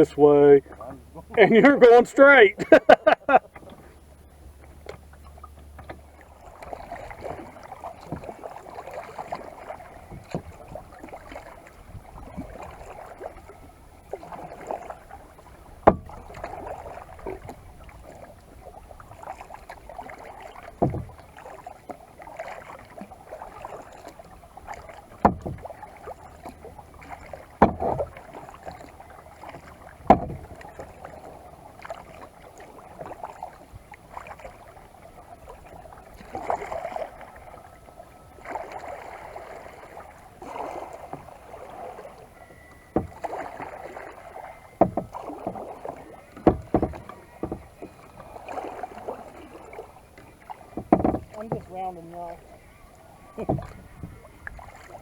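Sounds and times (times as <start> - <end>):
paddle swishing through water: 0.0 - 55.0
sharp knocks: 27.6 - 28.1, 30.1 - 30.5, 46.4 - 47.7, 50.8 - 51.5, 53.4 - 53.7.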